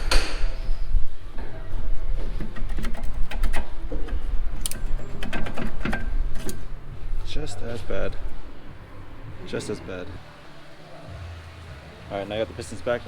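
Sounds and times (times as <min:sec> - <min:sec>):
steady low hum: 0:00.0 - 0:12.6
metallic clicks and knocks: 0:02.2 - 0:06.7.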